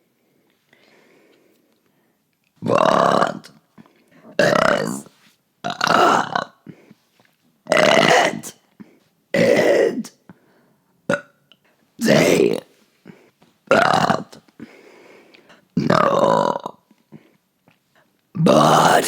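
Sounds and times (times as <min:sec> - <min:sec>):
long loud burps: 0:02.6 - 0:03.6, 0:04.3 - 0:05.0, 0:05.6 - 0:06.8, 0:07.7 - 0:08.6, 0:09.3 - 0:10.2, 0:11.1 - 0:11.4, 0:12.0 - 0:14.5, 0:15.8 - 0:17.4, 0:18.4 - 0:19.0.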